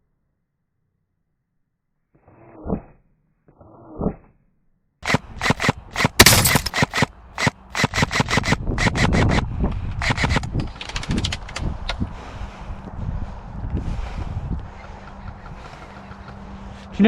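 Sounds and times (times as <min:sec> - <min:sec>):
airsoft guns firing: 0:05.0 - 0:08.6.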